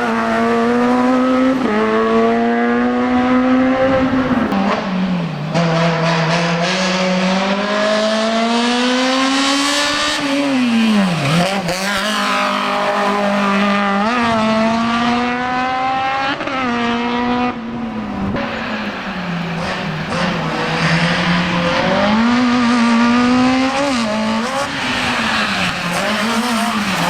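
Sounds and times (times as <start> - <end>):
race car engine at high revs: 0.0 - 27.0.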